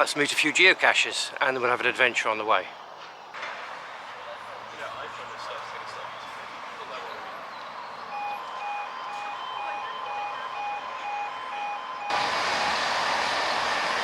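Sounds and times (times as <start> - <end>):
train running: 4.8 - 14.0
two-tone warning beeps: 8.0 - 13.0.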